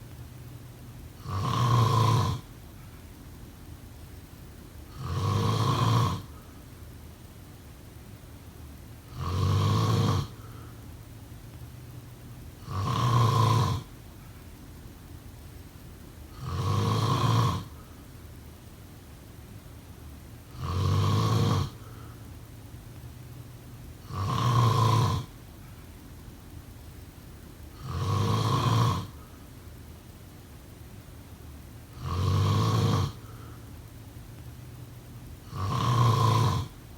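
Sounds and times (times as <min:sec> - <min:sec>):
loud snoring: 0:01.2 - 0:02.5, 0:04.9 - 0:06.4, 0:09.1 - 0:10.6, 0:12.6 - 0:13.9, 0:16.3 - 0:17.8, 0:20.5 - 0:22.0, 0:24.0 - 0:25.4, 0:27.8 - 0:29.3, 0:31.9 - 0:33.5, 0:35.4 - 0:36.8.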